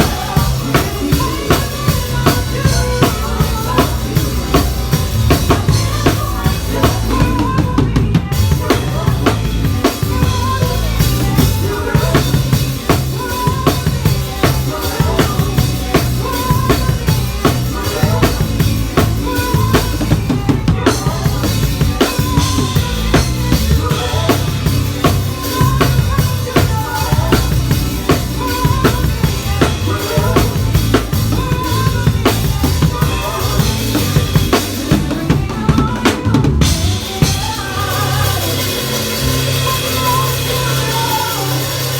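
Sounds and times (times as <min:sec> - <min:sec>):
band instruments: 0:00.0 - 0:41.9
drum kit groove: 0:00.0 - 0:41.9
sustained bass notes: 0:00.0 - 0:41.9.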